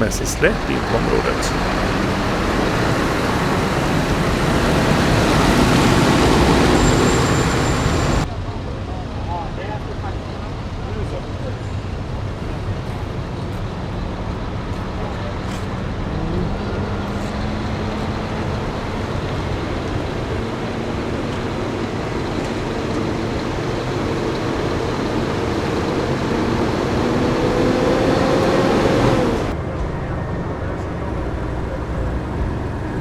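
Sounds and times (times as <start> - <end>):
heavy truck engines rumbling: 0.0 - 8.2.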